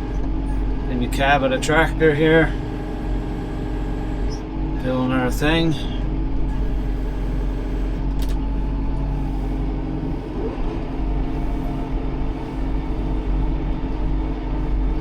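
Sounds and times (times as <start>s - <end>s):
tractor engine running: 0.0s - 15.0s.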